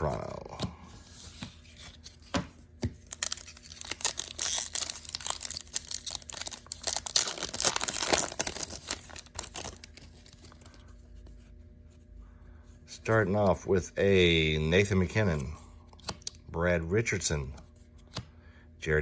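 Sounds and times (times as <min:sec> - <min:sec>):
wrapper crackling and rustling: 0:03.0 - 0:10.7.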